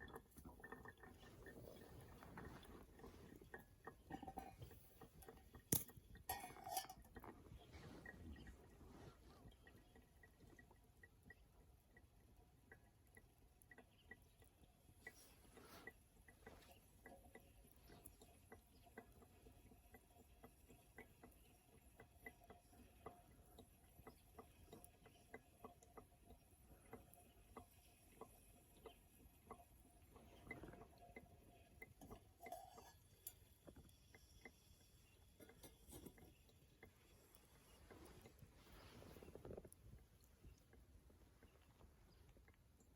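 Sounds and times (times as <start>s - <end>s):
small wood fire crackling: 31.6s - 42.9s.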